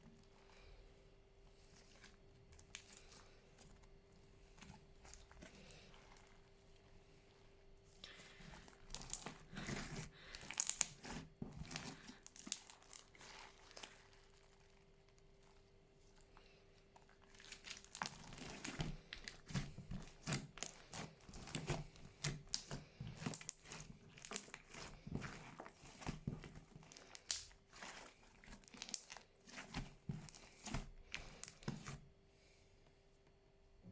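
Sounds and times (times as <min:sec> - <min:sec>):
slime crackling and popping: 0:08.0 - 0:15.2, 0:17.0 - 0:32.0.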